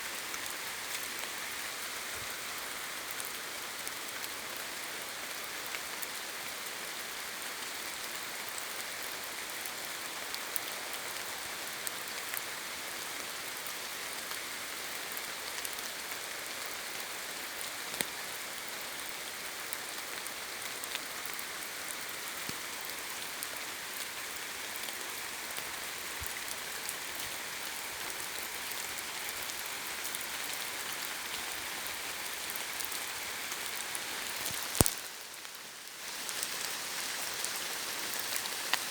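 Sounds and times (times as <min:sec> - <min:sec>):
steady rain hiss: 0:00.0 - 0:38.9
raindrops landing close by: 0:19.7 - 0:38.9.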